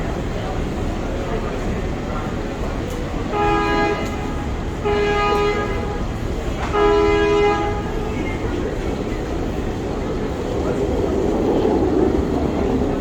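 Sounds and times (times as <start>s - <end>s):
low rumble of engine and water: 0.0s - 13.0s
ship horn blasts: 2.2s - 9.9s.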